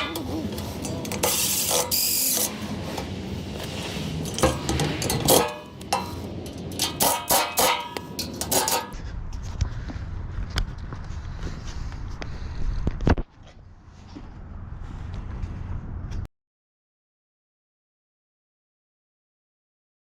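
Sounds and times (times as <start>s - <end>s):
power tool running: 0.9s - 2.6s
metal scrap clanking: 4.2s - 9.0s.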